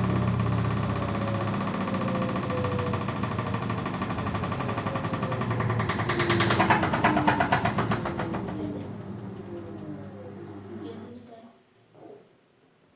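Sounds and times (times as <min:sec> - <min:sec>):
washing machine rattling and knocking: 0:00.0 - 0:10.0.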